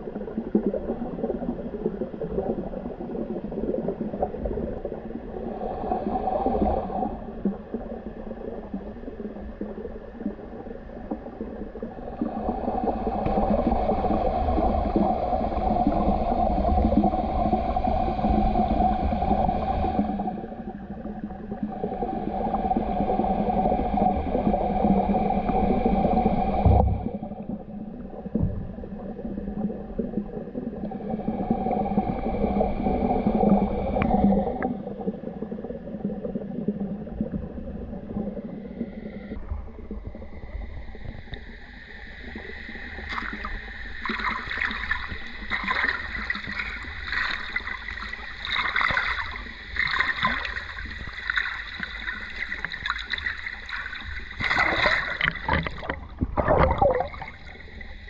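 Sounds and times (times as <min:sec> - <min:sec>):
water gurgling: 0:00.0 - 0:58.0
water splashing: 0:43.0 - 0:58.0.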